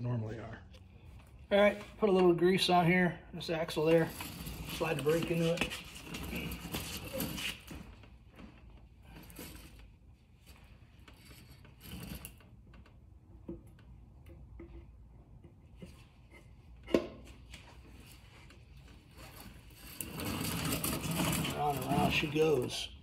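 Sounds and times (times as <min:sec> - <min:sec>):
metal parts scraping: 0:19.2 - 0:22.8.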